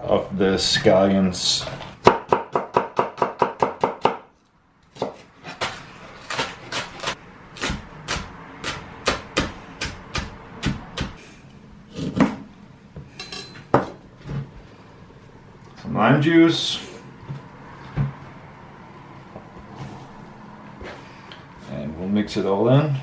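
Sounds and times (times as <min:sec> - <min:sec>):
knife chopping on cutting board: 0:04.9 - 0:11.2.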